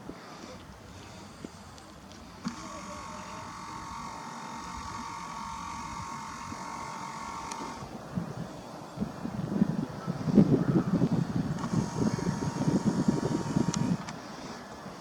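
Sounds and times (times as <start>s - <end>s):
faint wind on microphone: 0.0s - 15.0s
zoom lens motor whining: 1.0s - 7.9s, 11.5s - 14.2s
camera click: 2.4s - 3.0s, 6.2s - 7.8s, 11.6s - 11.9s.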